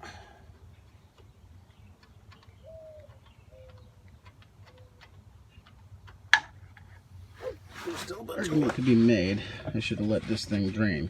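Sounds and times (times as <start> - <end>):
bird cooing softly: 2.6 - 3.9, 7.4 - 7.7.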